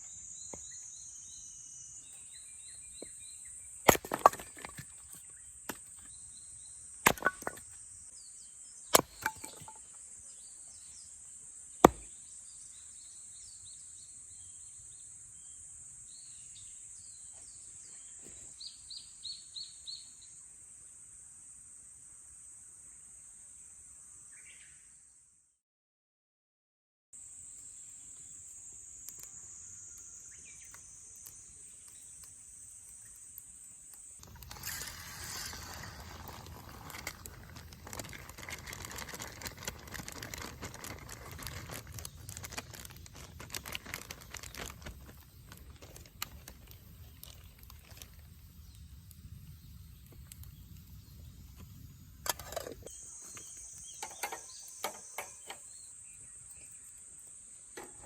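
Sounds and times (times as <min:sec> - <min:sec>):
high insect chorus: 0:00.0 - 0:25.2, 0:27.2 - 0:58.0
small crackles and clicks: 0:29.0 - 0:55.6.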